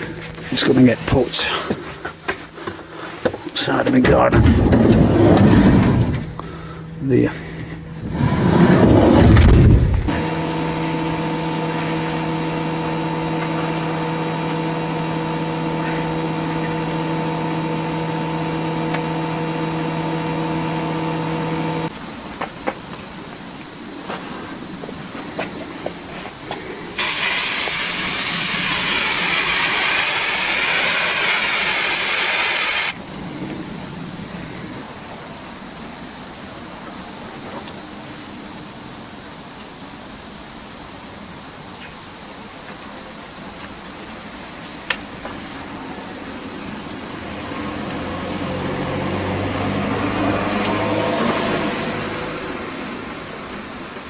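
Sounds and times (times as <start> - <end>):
loud steady hiss: 0.0 - 4.5, 9.7 - 54.0
van engine starting and idling: 3.6 - 21.9, 27.0 - 33.0.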